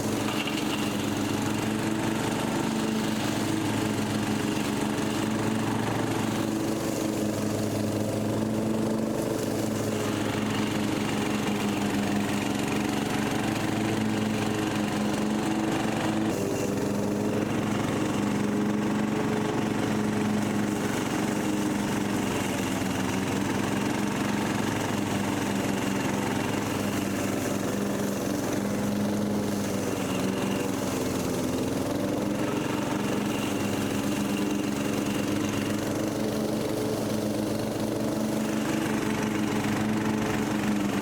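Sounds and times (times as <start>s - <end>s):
lawn mower engine running: 0.0s - 41.0s.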